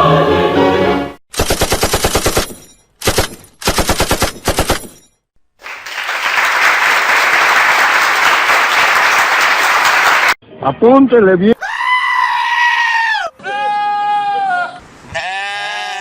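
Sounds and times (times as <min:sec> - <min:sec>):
machine-gun fire: 0:01.3 - 0:04.9.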